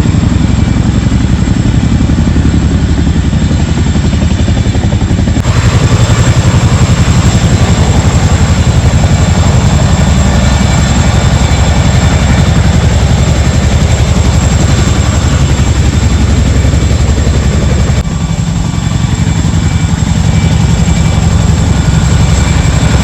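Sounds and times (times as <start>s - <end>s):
helicopter rotor chopping: 0.0s - 23.0s.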